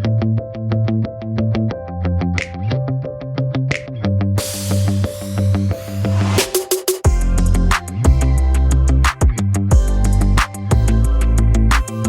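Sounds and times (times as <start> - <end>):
rising noise swell: 4.4 - 6.8
sharp hits: 4.4 - 7.3
upbeat electronic music: 4.4 - 12.0.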